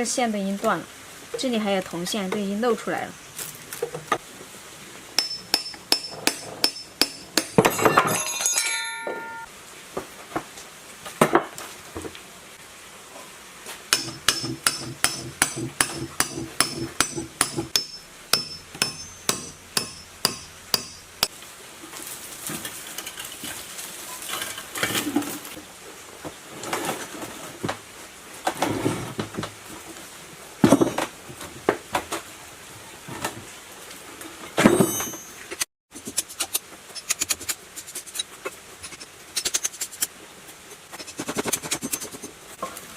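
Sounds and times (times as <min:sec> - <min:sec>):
hammering and tapping on metal: 0:05.2 - 0:09.5, 0:13.9 - 0:21.3.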